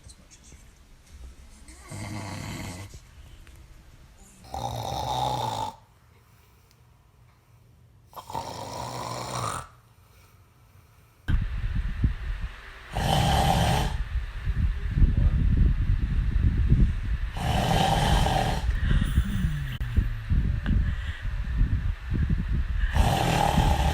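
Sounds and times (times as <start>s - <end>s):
man snoring: 1.8s - 3.0s, 4.4s - 5.9s, 8.1s - 9.8s, 12.9s - 14.0s, 17.3s - 20.2s, 22.8s - 23.9s
loud low rumble: 11.3s - 23.9s.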